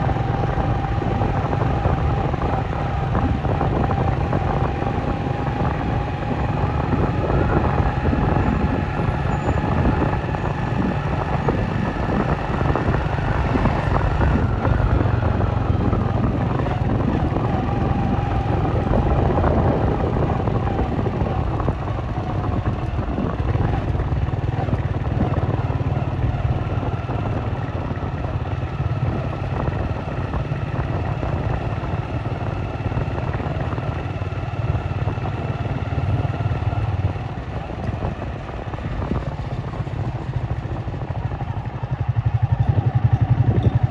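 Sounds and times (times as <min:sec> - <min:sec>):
road traffic rumble: 0:00.0 - 0:43.9.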